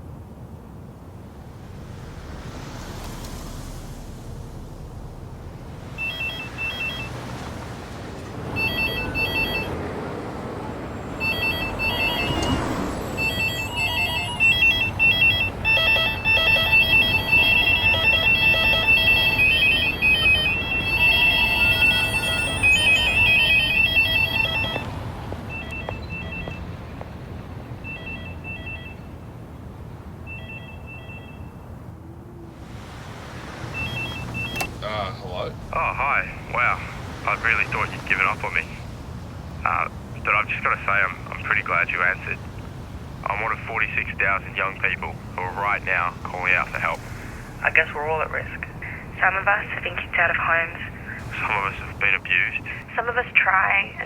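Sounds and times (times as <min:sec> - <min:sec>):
payphones ringing: 0:06.0 - 0:07.4, 0:08.2 - 0:09.8, 0:11.2 - 0:26.8, 0:27.8 - 0:29.1, 0:33.7 - 0:34.7.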